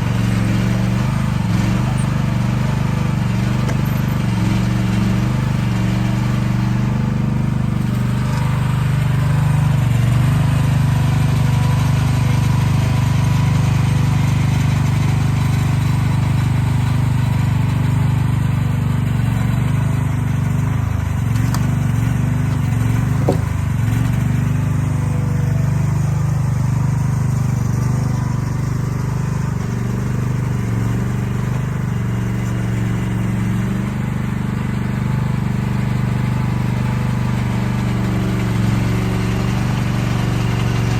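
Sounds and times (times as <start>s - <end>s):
diesel engine of heavy machinery: 0.0s - 40.9s
short knock: 22.5s - 23.6s.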